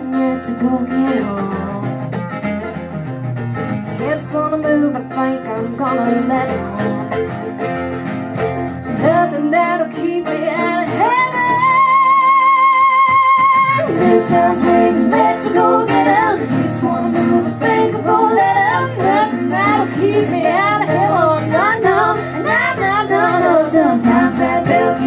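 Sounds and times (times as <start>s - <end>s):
woman singing: 0.0s - 2.1s, 4.0s - 7.2s, 9.0s - 25.0s
acoustic guitar: 0.0s - 25.0s.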